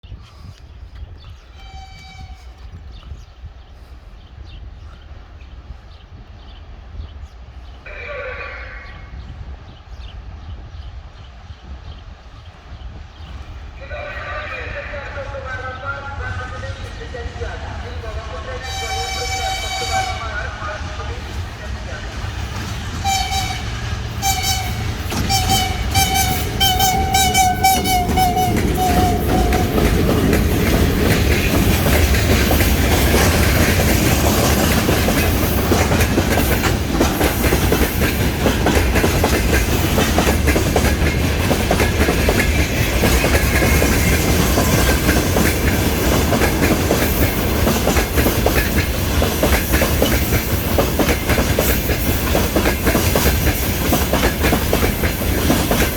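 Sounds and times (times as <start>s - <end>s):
locomotive horn blasts: 1.6s - 2.6s, 18.6s - 20.4s, 23.0s - 29.6s
train wheels clattering over rail joints: 22.2s - 55.9s.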